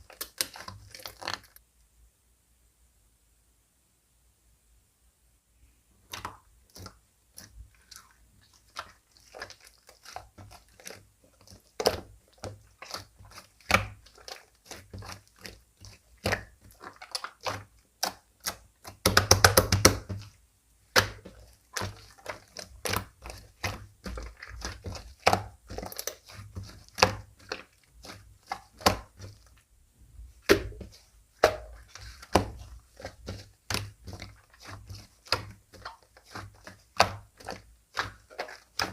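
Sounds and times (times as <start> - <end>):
slime kneaded by hand popping: 0.0 - 1.6, 6.0 - 29.6, 30.2 - 38.9.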